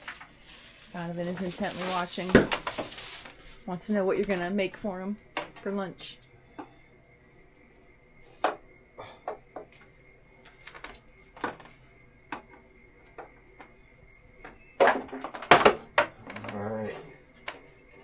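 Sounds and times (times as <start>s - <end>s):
clattering and rustling: 0.0s - 3.7s
hands handling oven and packaging: 0.0s - 3.7s.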